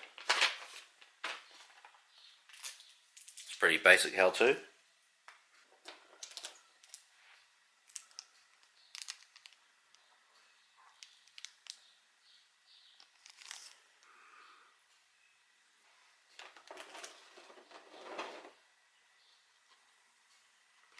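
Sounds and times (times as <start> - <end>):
plastic and paper crinkling: 0.0 - 3.6, 13.0 - 13.8.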